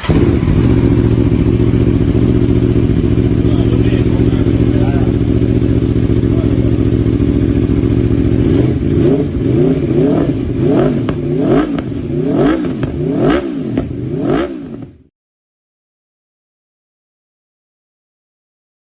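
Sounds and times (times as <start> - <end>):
motorcycle engine idling and revving: 0.0 - 15.1.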